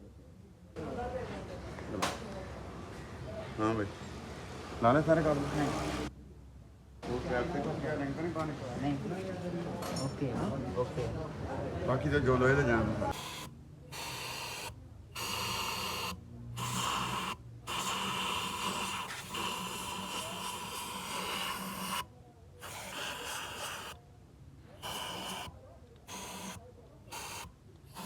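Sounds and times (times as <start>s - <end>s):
hissing bursts: 13.1s - 24.0s, 24.8s - 25.5s, 26.1s - 28.0s.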